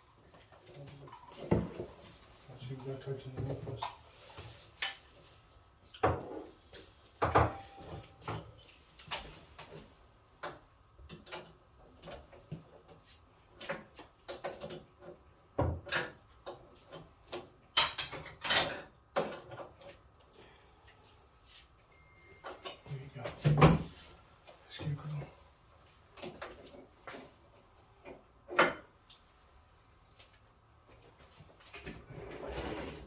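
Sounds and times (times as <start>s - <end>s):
tools and parts clicking and clunking: 7.3s - 20.1s, 22.4s - 24.0s, 26.1s - 29.4s.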